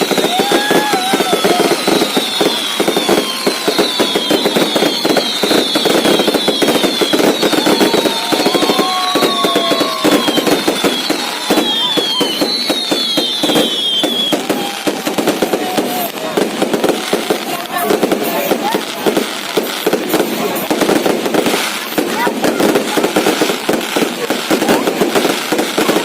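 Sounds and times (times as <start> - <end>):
fireworks crackling bangs: 0.0 - 26.0
high falling firework whistles: 0.0 - 26.0.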